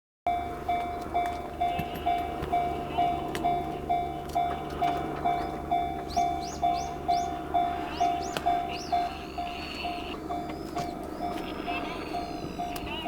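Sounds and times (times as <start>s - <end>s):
level crossing electronic bell: 0.3s - 10.6s, 11.2s - 13.0s
high rising chirps: 5.3s - 13.0s.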